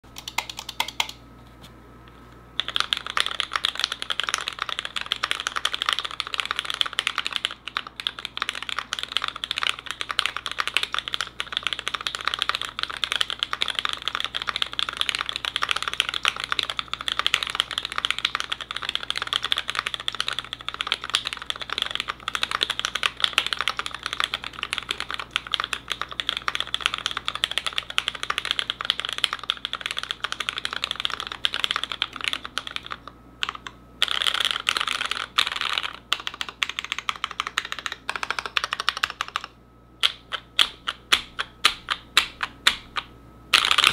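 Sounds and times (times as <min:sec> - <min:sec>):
fast typing on mechanical keyboard: 0:00.1 - 0:01.2, 0:02.6 - 0:43.0, 0:43.6 - 0:43.9.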